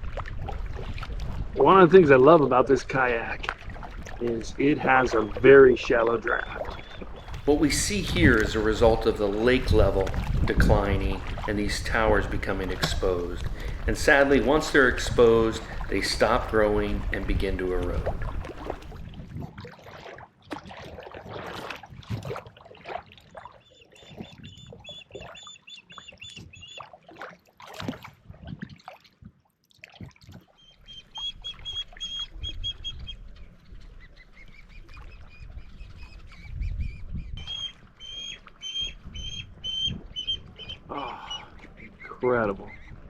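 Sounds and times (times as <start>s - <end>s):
splashes and knocks: 0.0s - 1.6s, 2.9s - 5.9s, 6.5s - 24.4s, 26.8s - 30.6s
water birds calling: 0.0s - 19.2s, 19.8s - 29.1s, 29.8s - 43.0s.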